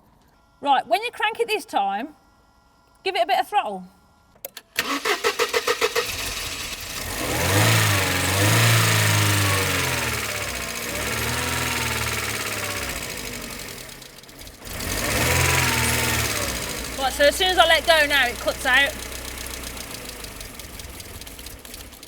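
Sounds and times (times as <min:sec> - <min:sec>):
engine cranking on starter: 0:04.5 - 0:22.0
car engine revving: 0:04.8 - 0:22.0.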